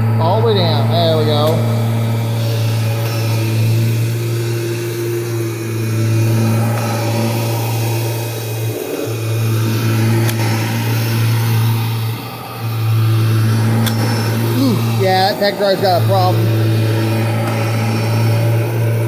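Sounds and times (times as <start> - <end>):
vacuum cleaner motor hum: 0.0 - 19.0.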